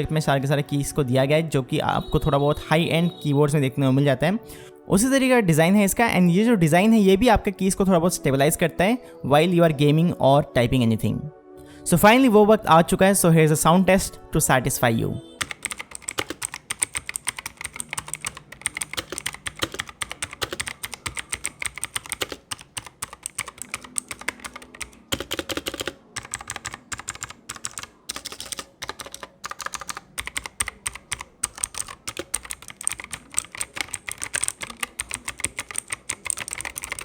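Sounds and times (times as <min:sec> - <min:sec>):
mechanical keyboard key clicks: 0:15.4 - 0:37.0.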